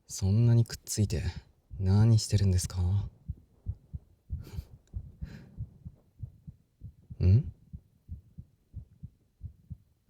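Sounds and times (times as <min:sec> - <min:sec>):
heartbeat thumps: 0:01.0 - 0:10.0
man humming: 0:07.1 - 0:07.6.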